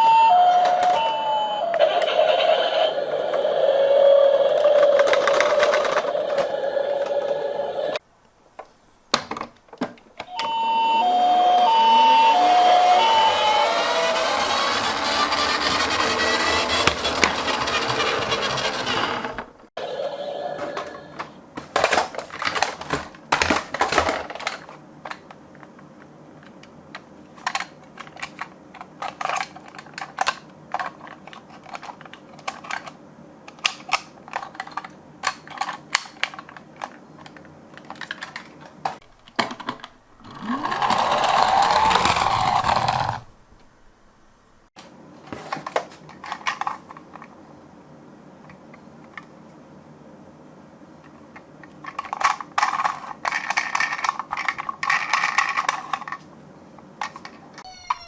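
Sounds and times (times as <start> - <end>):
toy car rolling whir: 0.0 - 8.0, 10.3 - 21.2, 39.4 - 43.4, 51.8 - 56.2
toy cars clicking and knocking: 4.5 - 7.4, 13.0 - 19.5, 21.2 - 43.4, 45.5 - 47.3, 51.6 - 56.3, 57.0 - 58.0.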